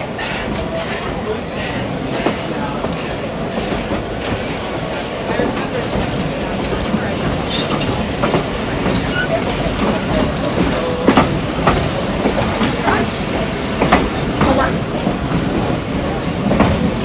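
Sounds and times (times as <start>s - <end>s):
train cars rumbling on track: 0.0s - 17.0s
high wheel squeals: 4.2s - 10.4s.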